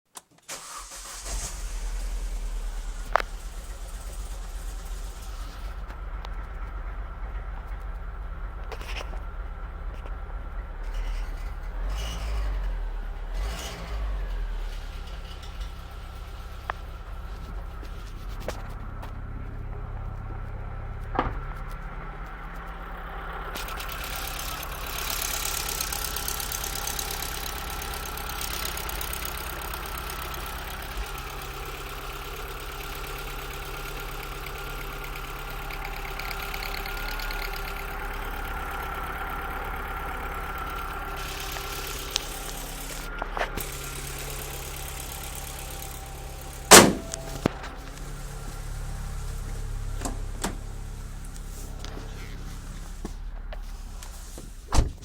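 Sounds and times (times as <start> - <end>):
car engine idling: 0.5 - 55.0
high-pitched exhaust squeak: 10.8 - 19.0, 40.6 - 54.7.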